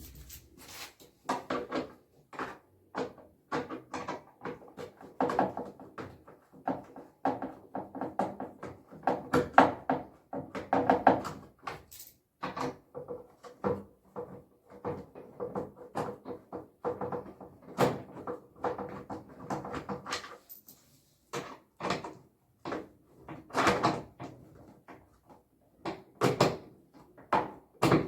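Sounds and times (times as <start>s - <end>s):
hard parts knocking and clattering: 0.0s - 0.7s.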